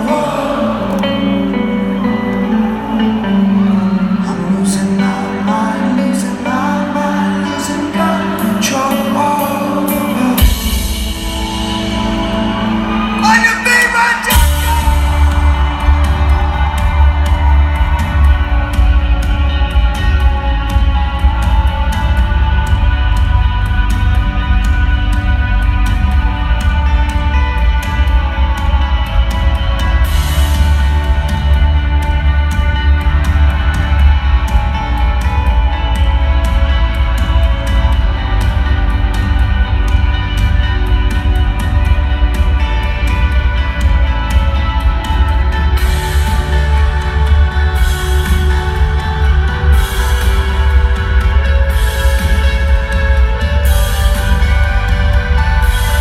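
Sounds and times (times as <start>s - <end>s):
person singing: 0.0s - 24.6s
rock band playing live: 0.0s - 56.0s.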